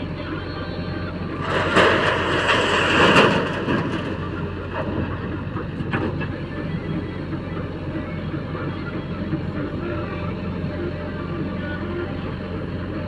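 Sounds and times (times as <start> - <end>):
heavy diesel engine running: 0.0 - 13.0
loud rushing noise: 1.4 - 4.4.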